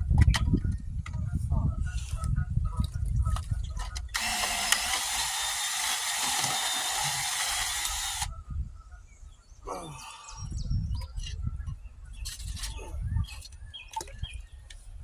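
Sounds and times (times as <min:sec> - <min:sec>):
electric drill high hiss: 0:04.2 - 0:08.3.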